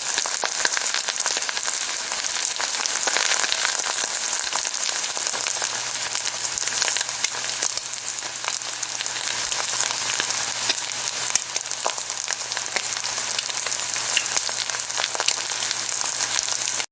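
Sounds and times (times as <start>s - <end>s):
egg frying in hot oil: 0.0s - 16.9s.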